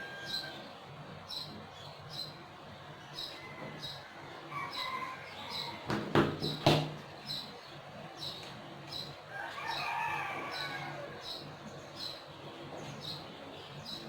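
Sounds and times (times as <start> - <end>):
rooster crowing: 0.0 - 0.6, 3.4 - 5.9, 9.3 - 11.2.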